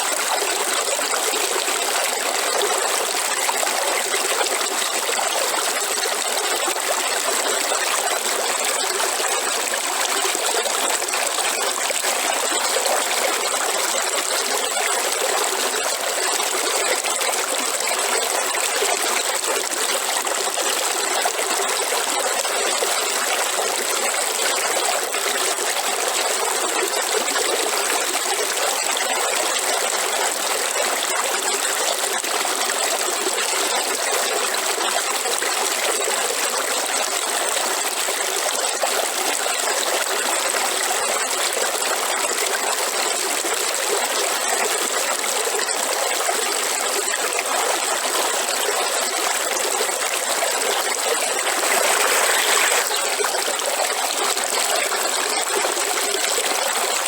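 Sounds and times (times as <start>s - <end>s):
river water flowing: 46.3s - 57.0s.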